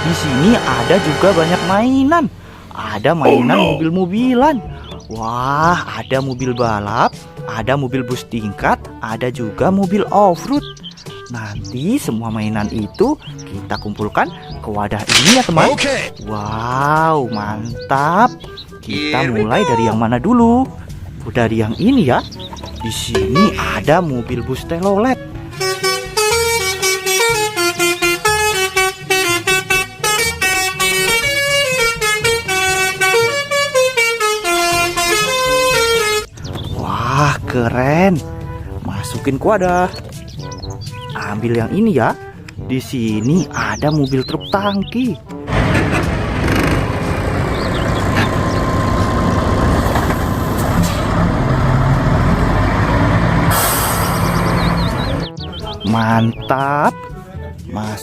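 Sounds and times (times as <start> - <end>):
truck engine running: 0.0 - 2.7, 45.4 - 55.4
toy bus musical horn: 25.5 - 36.3
air brake hiss: 53.5 - 54.4.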